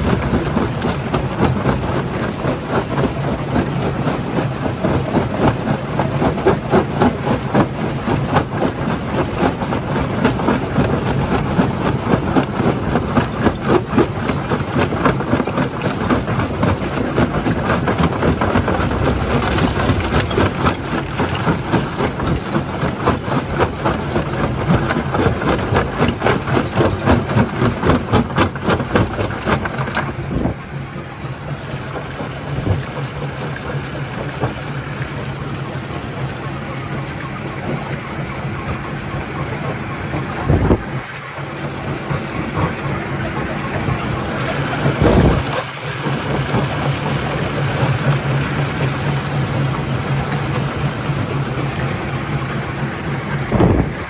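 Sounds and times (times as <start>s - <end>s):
engine hum: 0.0s - 54.0s
stone crusher rattling: 18.2s - 22.4s.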